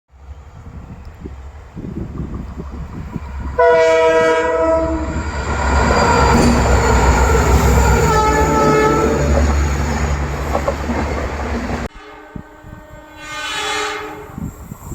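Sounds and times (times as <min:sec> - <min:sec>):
train rumbling and wheel clatter: 0:00.1 - 0:13.2
locomotive twin-tone horn: 0:03.6 - 0:05.4, 0:06.0 - 0:09.8, 0:11.8 - 0:14.5.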